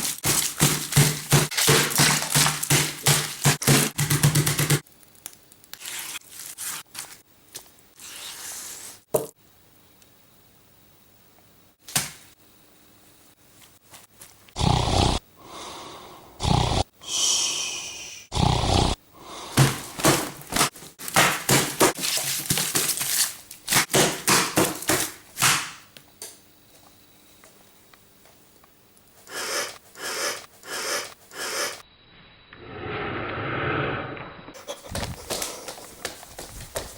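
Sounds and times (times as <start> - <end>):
thuds knocks and crashes: 0.0 - 4.8, 19.6 - 23.1.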